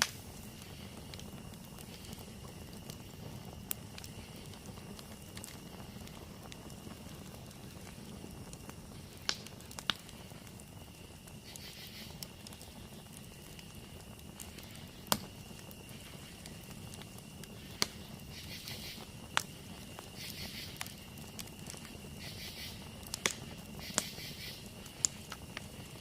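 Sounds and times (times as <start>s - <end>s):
campfire crackling and popping: 0.0s - 26.0s.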